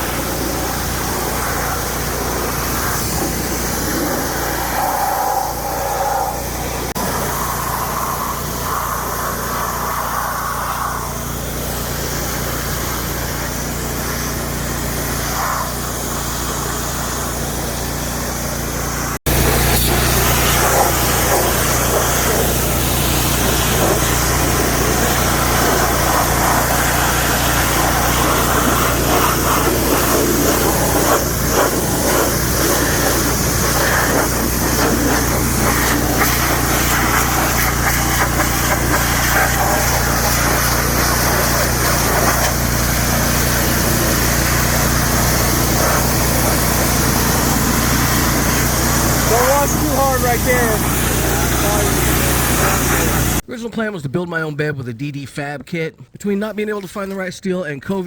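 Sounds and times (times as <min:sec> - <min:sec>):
small engine running: 0:00.0 - 0:53.4.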